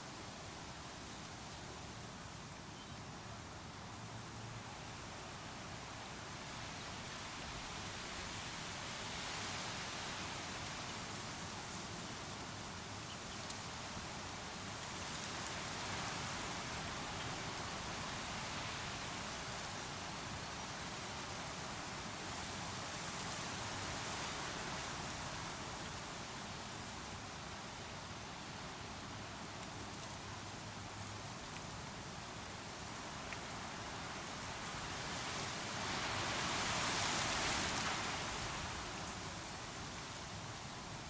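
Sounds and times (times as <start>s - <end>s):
creek water rushing: 33.1s - 41.0s.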